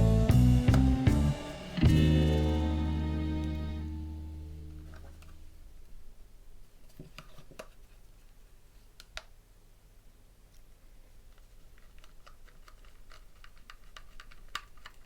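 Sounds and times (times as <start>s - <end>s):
background music: 0.0s - 5.0s
hands handling laptop parts: 6.7s - 9.3s, 11.3s - 15.0s.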